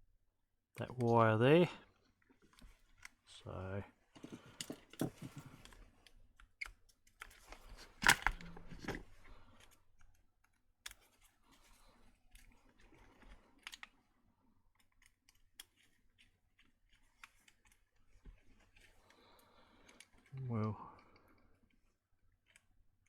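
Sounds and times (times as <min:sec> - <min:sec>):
hands clicking and tapping on parts: 0:04.2 - 0:07.4.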